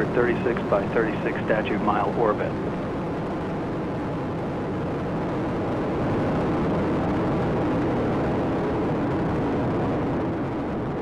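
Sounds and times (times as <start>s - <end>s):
rocket engines rumbling: 0.0s - 2.9s.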